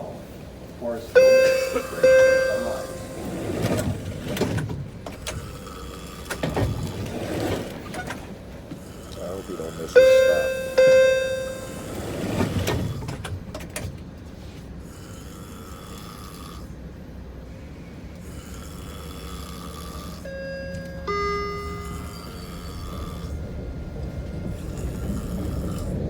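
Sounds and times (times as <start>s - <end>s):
subway car hum: 0.0s - 26.0s
electronic two-tone chime: 1.2s - 3.8s, 10.0s - 12.0s, 20.3s - 24.8s
man snoring: 5.4s - 7.0s, 8.8s - 10.0s, 14.8s - 16.8s, 18.2s - 20.4s, 21.8s - 23.4s, 24.5s - 26.0s.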